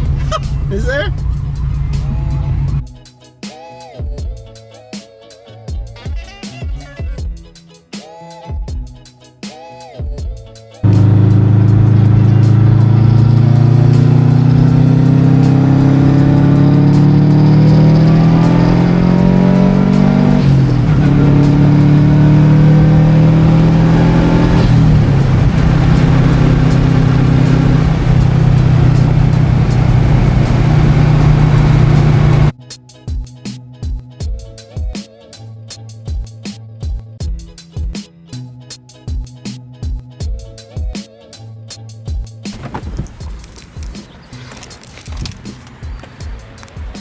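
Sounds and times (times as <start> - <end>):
car engine accelerating: 0.0 - 2.8, 10.8 - 32.5, 42.5 - 45.1.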